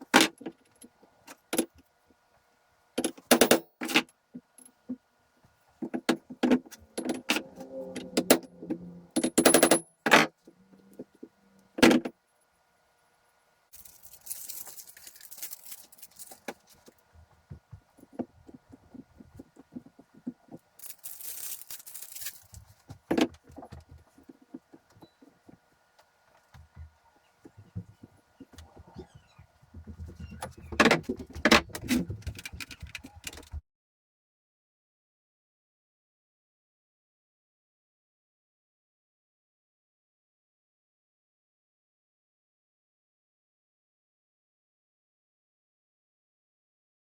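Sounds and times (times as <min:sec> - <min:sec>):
metal parts clinking: 0:13.8 - 0:16.6, 0:20.8 - 0:22.6.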